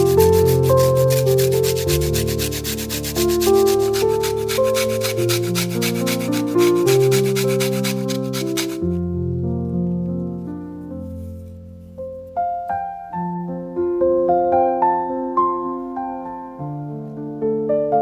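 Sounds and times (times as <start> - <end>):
rapid scraping strokes: 0.0 - 9.0
piano music: 0.0 - 18.0.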